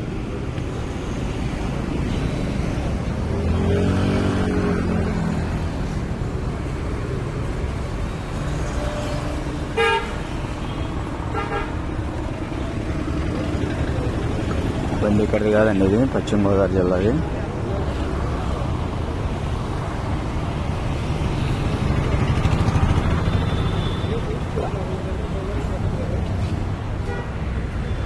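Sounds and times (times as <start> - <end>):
traffic rumble: 0.0 - 28.0
vehicle passing by: 1.0 - 9.6, 12.1 - 27.0
car horn toots: 9.8 - 11.7, 27.0 - 27.4.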